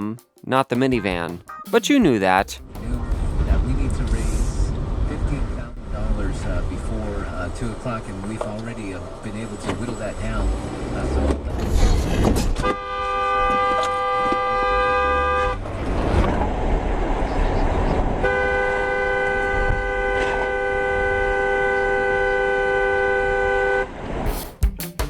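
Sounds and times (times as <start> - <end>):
car horn blasts: 12.6 - 15.7, 18.2 - 23.9.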